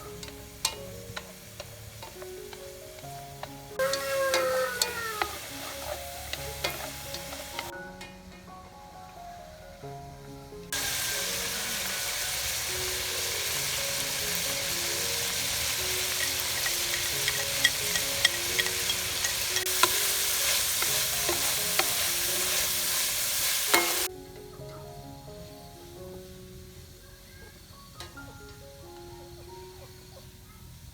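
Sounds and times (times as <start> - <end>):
food sizzling in a hot pan: 0.0 - 8.0, 10.7 - 30.9
spatula clicking against pan: 0.1 - 8.1, 15.9 - 22.1.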